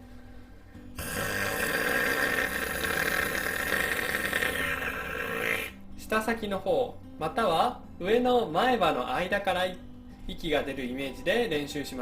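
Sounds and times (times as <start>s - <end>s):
breath hissing: 1.0s - 5.8s
guttural throat rattle: 1.0s - 5.8s.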